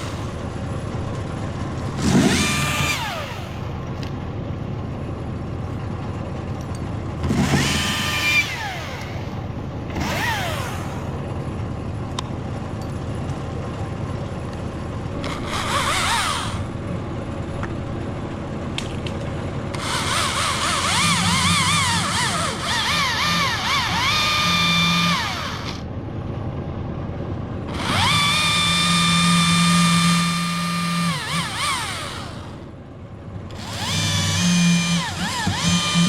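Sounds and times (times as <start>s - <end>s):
electric chainsaw revving: 0.0s - 0.4s, 1.9s - 3.7s, 7.3s - 11.1s, 15.2s - 16.7s, 19.8s - 25.8s, 27.7s - 32.7s, 33.5s - 36.0s.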